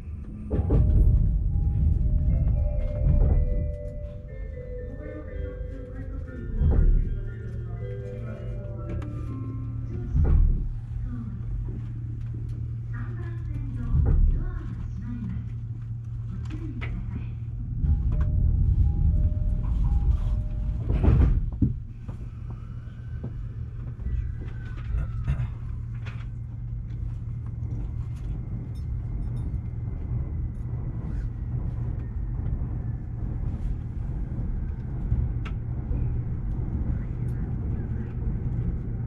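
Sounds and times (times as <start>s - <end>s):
train wheels rumbling on rail: 0.0s - 39.0s.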